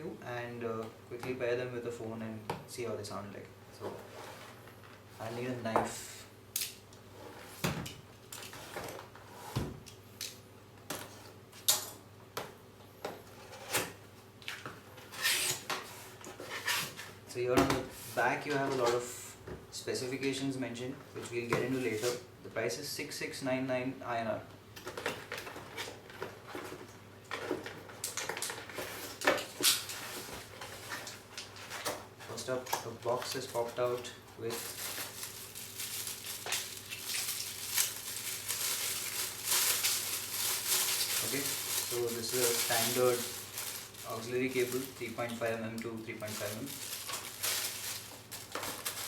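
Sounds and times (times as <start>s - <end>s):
packaging rustling: 25.2s - 49.0s.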